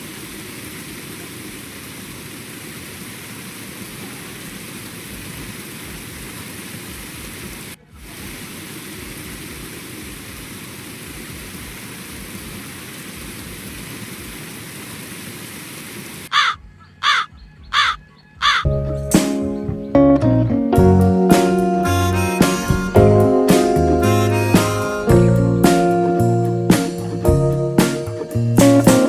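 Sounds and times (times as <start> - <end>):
harsh caw-like bird calls: 16.3 - 18.7.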